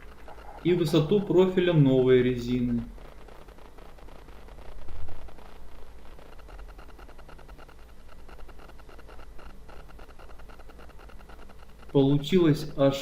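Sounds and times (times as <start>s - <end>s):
low room hum: 0.0s - 13.0s.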